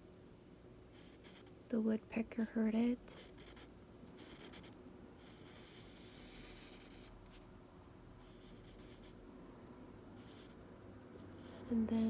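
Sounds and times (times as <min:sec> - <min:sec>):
drawing tool scratching paper: 0:01.0 - 0:01.5, 0:03.2 - 0:07.4, 0:08.2 - 0:09.2, 0:10.2 - 0:10.6, 0:11.2 - 0:12.0.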